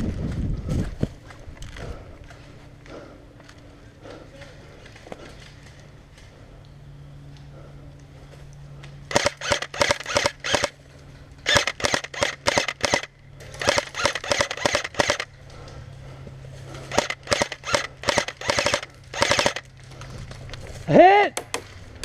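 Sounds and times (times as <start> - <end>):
airsoft guns firing pops: 9.1 - 10.7, 11.5 - 15.3, 16.9 - 19.8.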